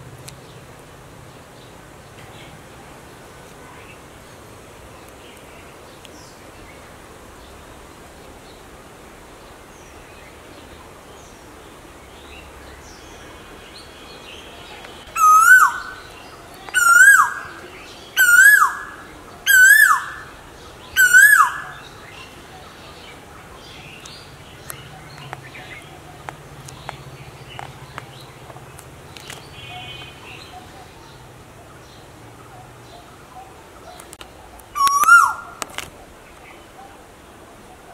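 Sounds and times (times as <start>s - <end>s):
bird whistled calls: 15.1s - 16.1s, 16.7s - 17.6s, 18.2s - 20.3s, 21.0s - 21.9s, 34.8s - 35.6s.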